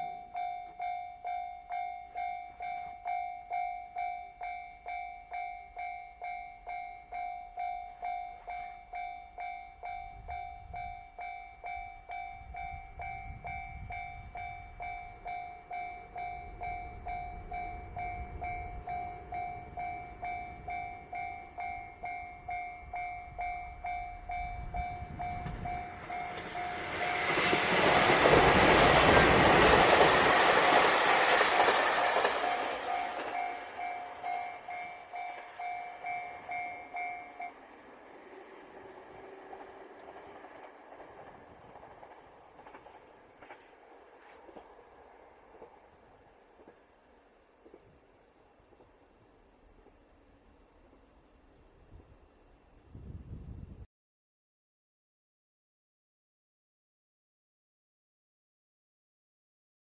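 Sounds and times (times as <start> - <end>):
level crossing warning bell: 0.0 - 37.9
diesel train rumbling past: 0.0 - 51.8.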